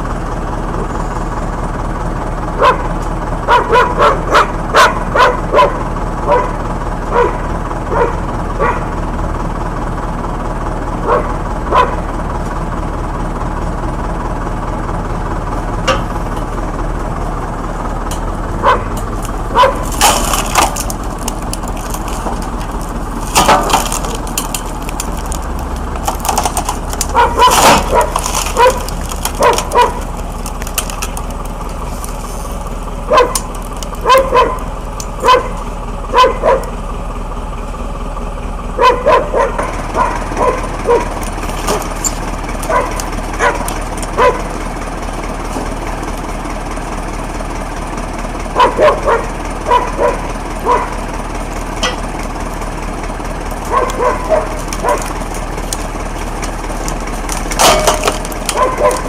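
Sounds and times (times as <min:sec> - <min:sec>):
low machine hum: 0:00.0 - 0:59.0
dog barking: 0:02.6 - 0:08.9, 0:11.0 - 0:12.0, 0:18.6 - 0:19.9, 0:27.1 - 0:30.0, 0:33.1 - 0:36.7, 0:38.8 - 0:41.8, 0:42.7 - 0:44.5, 0:48.6 - 0:51.0, 0:53.7 - 0:55.1, 0:58.5 - 0:59.0.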